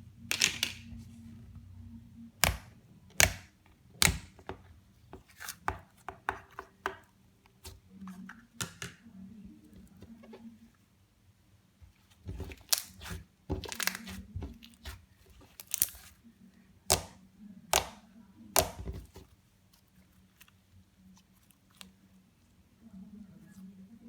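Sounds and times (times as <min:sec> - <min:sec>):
slime squishing with pops: 0:11.9 - 0:16.2, 0:18.6 - 0:22.0.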